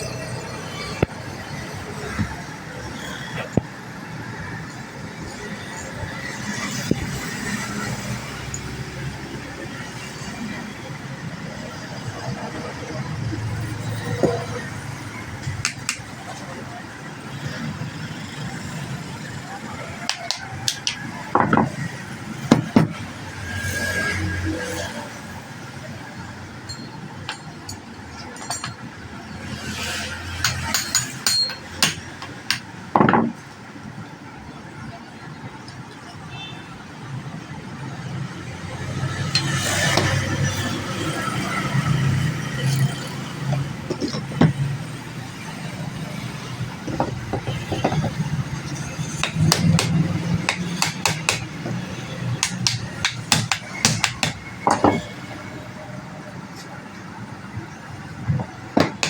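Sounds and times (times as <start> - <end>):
tools and metal parts knocking: 15.4 - 16.1, 20.1 - 23.1, 26.6 - 29.0, 30.4 - 33.5, 43.5 - 44.7, 46.6 - 55.1, 58.2 - 59.0.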